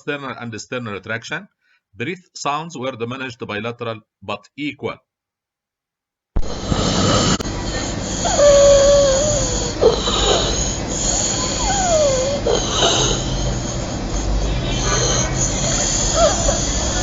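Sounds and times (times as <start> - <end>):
harsh rush of air: 6.4 - 17.0
child's high-pitched stridor: 7.6 - 17.0.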